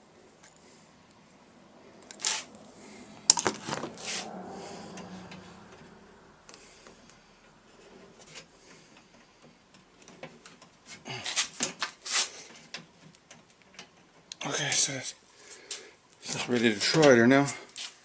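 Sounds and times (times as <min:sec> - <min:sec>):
small clicks and rattles of handling: 0:08.2 - 0:14.4.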